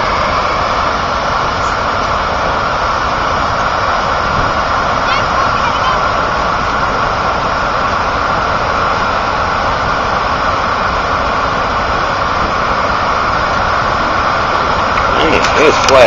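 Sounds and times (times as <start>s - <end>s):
water rushing over spillway: 0.0s - 16.0s.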